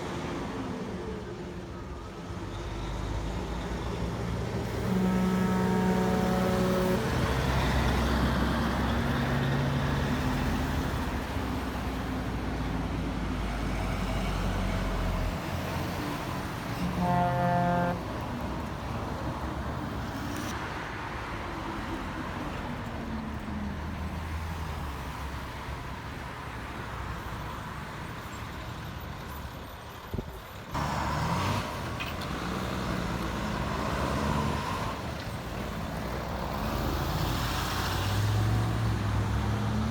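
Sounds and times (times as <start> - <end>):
heavy highway traffic: 0.0 - 39.9
truck engines rumbling: 0.0 - 39.9
horn blast: 4.6 - 8.0, 16.7 - 18.2.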